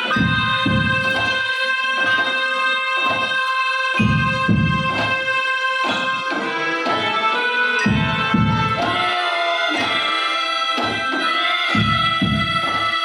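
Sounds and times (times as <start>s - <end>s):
wind melody: 0.0s - 9.4s
bass drum beats: 4.0s - 5.2s, 7.9s - 8.8s.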